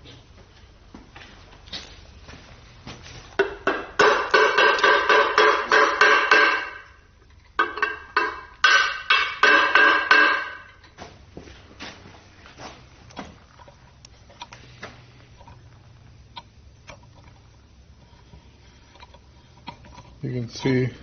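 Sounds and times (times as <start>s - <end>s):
hammer striking metal: 3.4s - 7.0s, 7.6s - 10.8s.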